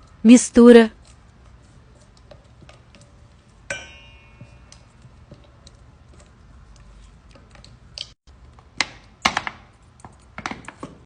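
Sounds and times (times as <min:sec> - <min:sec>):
utensil stirring in container: 0:01.0 - 0:08.1
sharp ringing clink: 0:03.7 - 0:05.0.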